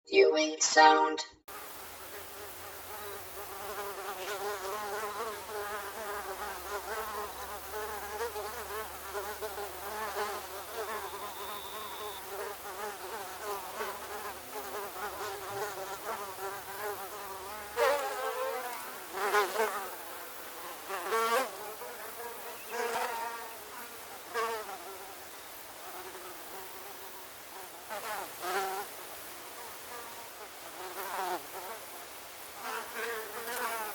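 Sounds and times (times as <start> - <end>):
swarm of mosquitoes whining: 1.6 - 28.8
single mosquito passing close: 32.6 - 33.9.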